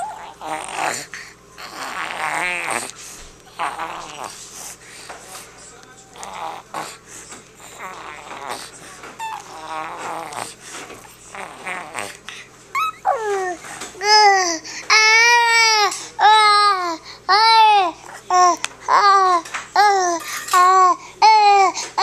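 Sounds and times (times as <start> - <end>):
infant babbling: 0.0 - 2.9, 3.5 - 4.4, 6.2 - 7.0, 7.6 - 10.6, 11.3 - 22.0
infant squealing: 0.0 - 2.9, 3.6 - 4.3, 9.2 - 10.5, 12.7 - 20.2.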